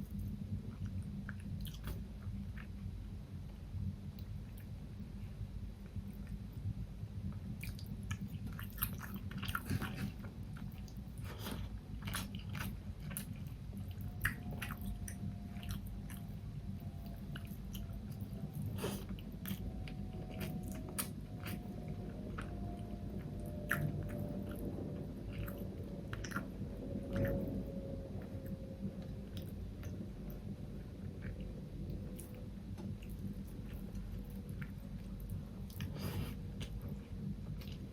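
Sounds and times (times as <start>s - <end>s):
steady low hum: 0.0s - 37.9s
chewing with wet mouth clicks: 0.7s - 2.8s, 7.4s - 27.6s, 31.0s - 37.9s.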